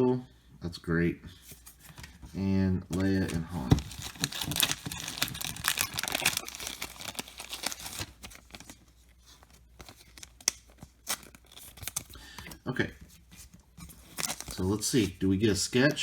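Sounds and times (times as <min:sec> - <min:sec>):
foil wrapper tearing and crinkling: 0:03.0 - 0:08.8, 0:09.8 - 0:12.2, 0:14.0 - 0:15.0.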